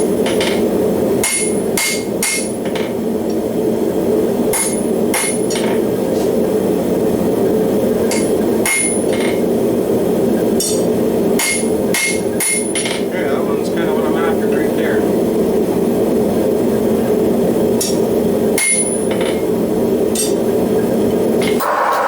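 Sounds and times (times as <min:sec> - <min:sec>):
hammer blows on anvil: 0:01.2 - 0:02.6, 0:10.6 - 0:13.0
forge roaring: 0:21.4 - 0:22.0.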